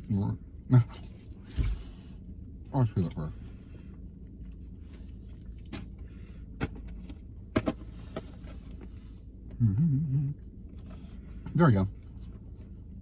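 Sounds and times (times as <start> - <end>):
steady low hum: 0.0 - 13.0
person's wordless wavering voice: 9.6 - 10.4.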